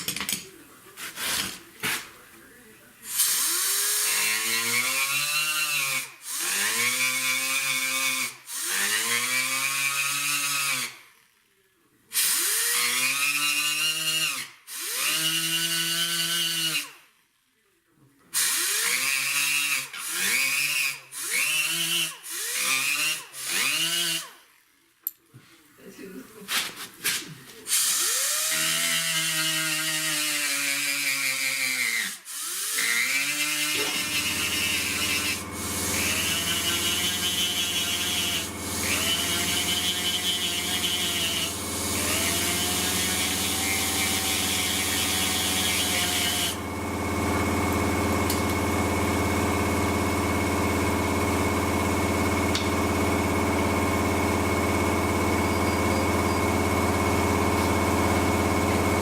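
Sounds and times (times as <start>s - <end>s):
power tool whining: 27.7s - 59.0s.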